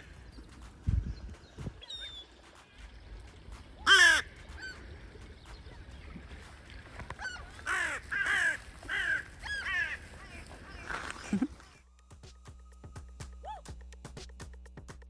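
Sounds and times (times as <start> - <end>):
crow cawing: 3.8 - 5.0, 7.1 - 11.3.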